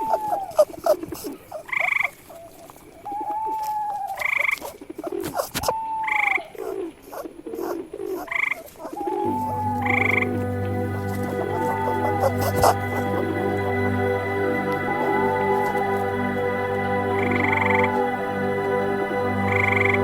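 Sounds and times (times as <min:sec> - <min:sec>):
frogs short arching calls: 0:00.0 - 0:13.7, 0:14.4 - 0:18.3
frog buzzy pulsed call: 0:09.0 - 0:20.0.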